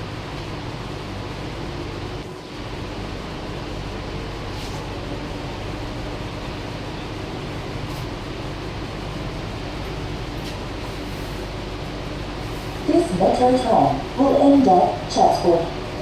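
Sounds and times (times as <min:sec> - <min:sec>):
train carriage rushing hum: 0:00.0 - 0:16.0.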